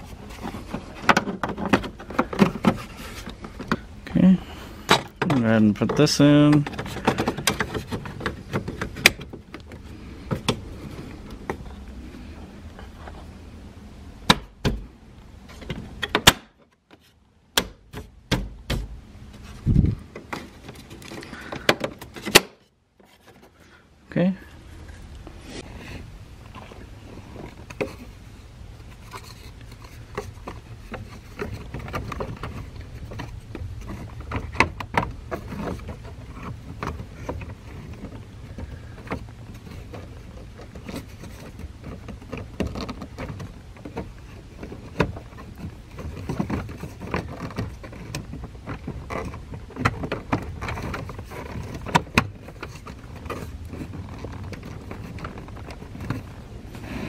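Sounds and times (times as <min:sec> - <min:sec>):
plastic trim clicking and scraping: 0:04.8 - 0:11.8, 0:28.8 - 0:57.0.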